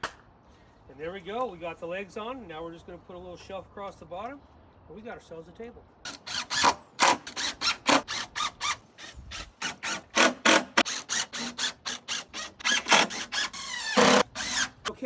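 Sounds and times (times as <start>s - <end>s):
hand tool rasping on wood: 9.6s - 14.9s.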